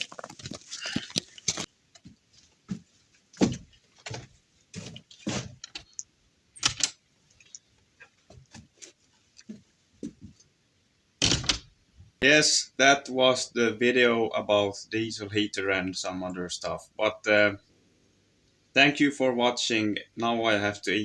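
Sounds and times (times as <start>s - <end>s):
irregular knocks and clatters: 0.0s - 5.9s.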